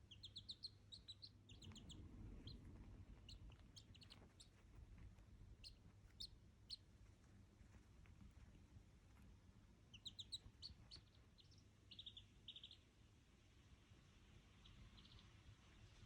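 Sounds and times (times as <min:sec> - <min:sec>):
duckling peeping: 0:00.0 - 0:06.9, 0:09.9 - 0:12.9, 0:14.6 - 0:15.4.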